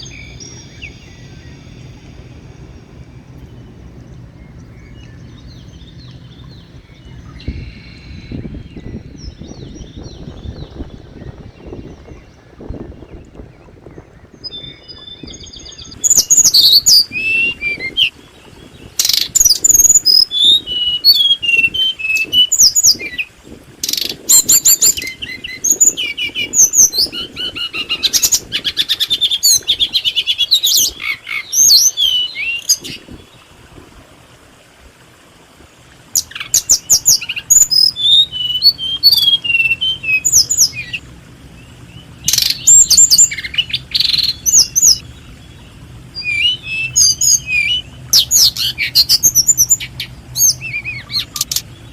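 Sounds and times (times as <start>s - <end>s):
small birds chirping and trilling: 0.0s - 33.6s, 36.2s - 51.9s.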